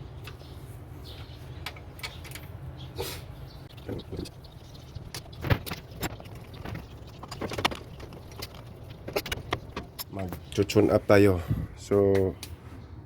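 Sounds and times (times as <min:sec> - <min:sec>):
steady low hum: 0:00.0 - 0:13.0
metal tools clinking on engine parts: 0:05.5 - 0:10.8.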